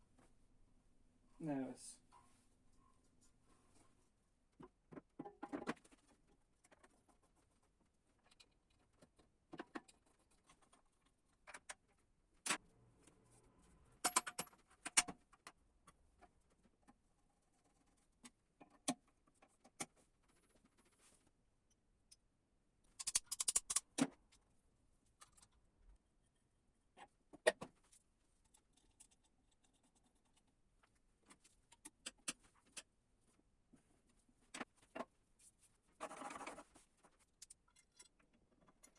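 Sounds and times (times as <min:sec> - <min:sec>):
small hard parts clicking and rattling: 0:14.0 - 0:20.8, 0:22.9 - 0:24.4, 0:36.0 - 0:38.9.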